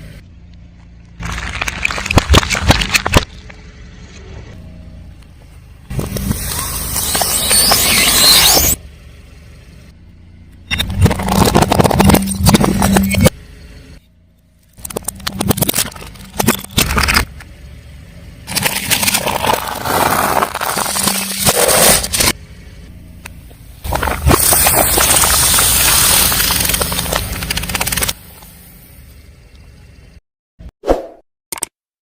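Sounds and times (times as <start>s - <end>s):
low engine hum: 0.0s - 21.3s, 22.0s - 30.2s
tyre crushing brittle objects: 1.2s - 3.6s, 10.8s - 13.3s, 18.5s - 22.3s, 23.9s - 28.2s.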